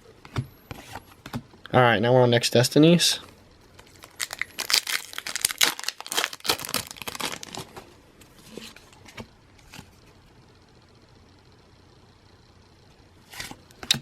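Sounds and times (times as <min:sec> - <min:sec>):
plastic packaging crinkling and tearing: 0:03.8 - 0:07.9.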